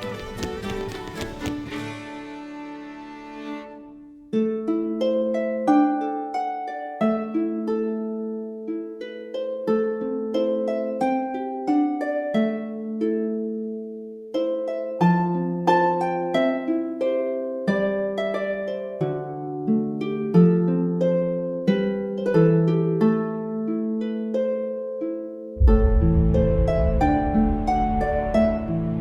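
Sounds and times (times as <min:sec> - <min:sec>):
plucked string melody: 0:00.0 - 0:29.0
sustained bass notes: 0:25.6 - 0:29.0.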